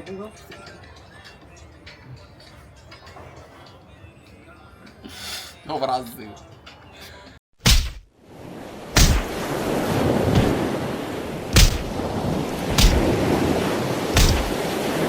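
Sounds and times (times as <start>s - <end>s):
water thumping the camera: 7.6s - 8.0s, 9.0s - 9.5s, 10.3s - 10.7s, 11.5s - 15.0s
ocean surf and rushing water: 7.6s - 15.0s
wind buffeting the microphone: 9.3s - 15.0s.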